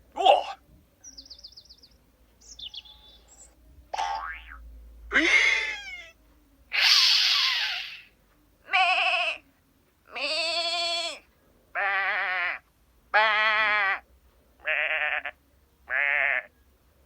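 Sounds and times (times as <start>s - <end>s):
cartoon sheep bleating: 5.2s - 6.2s.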